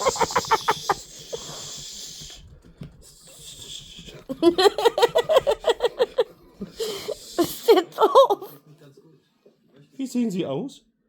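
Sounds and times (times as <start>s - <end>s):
person laughing: 0.0s - 1.5s, 4.3s - 6.3s.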